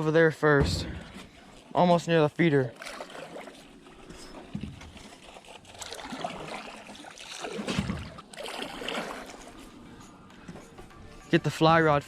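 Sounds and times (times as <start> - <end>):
water splashing around boat: 0.0 - 12.0
soft knocks on boat: 0.6 - 1.4, 4.4 - 5.2.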